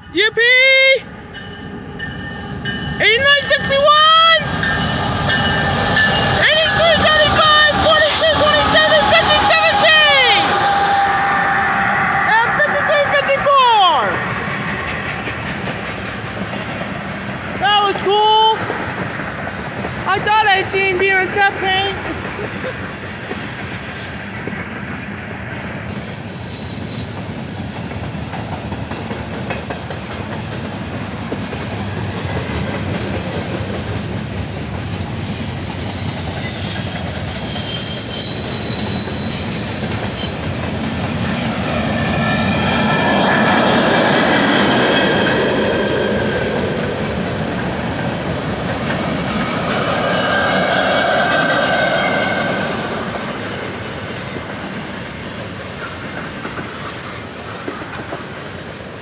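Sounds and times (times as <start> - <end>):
freight train cars rolling: 0.0 - 59.0
train wheels squealing: 4.4 - 16.2, 25.2 - 27.2, 34.9 - 46.4, 49.4 - 54.0.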